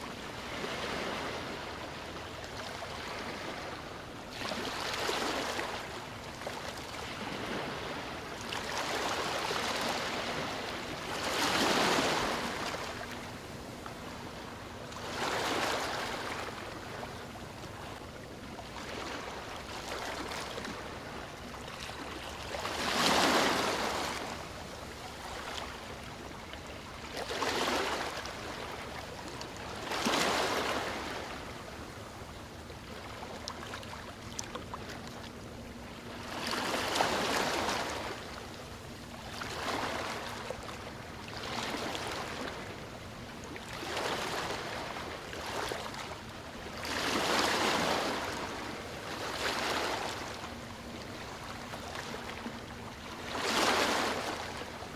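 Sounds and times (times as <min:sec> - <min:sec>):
sea waves washing ashore: 0:00.0 - 0:54.9.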